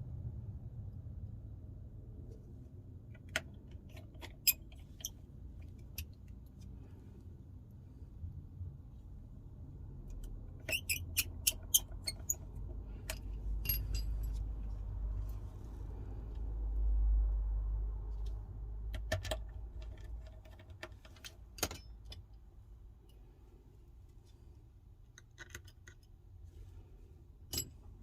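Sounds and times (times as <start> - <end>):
low rumble: 0.0 - 3.1, 12.4 - 18.9
tools clicking and tapping: 10.1 - 14.5, 18.9 - 22.4, 27.5 - 27.8.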